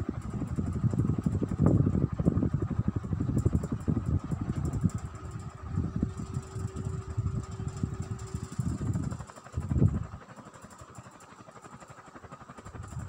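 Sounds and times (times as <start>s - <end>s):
ceiling fan low rumble: 0.0s - 10.2s, 12.6s - 13.0s
faint steady hum: 0.0s - 13.0s.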